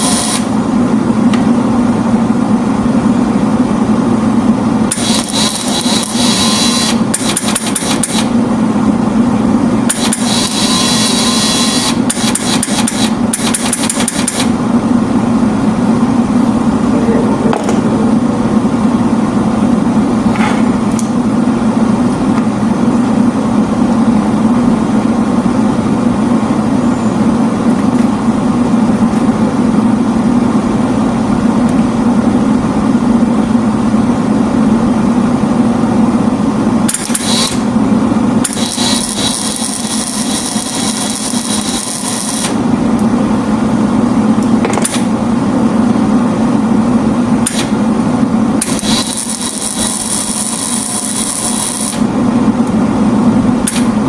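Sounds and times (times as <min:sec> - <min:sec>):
welding arc crackling: 0:00.0 - 0:00.6, 0:04.9 - 0:08.4, 0:09.9 - 0:14.6, 0:38.5 - 0:42.6, 0:48.6 - 0:52.1
machine hum: 0:00.0 - 0:54.0.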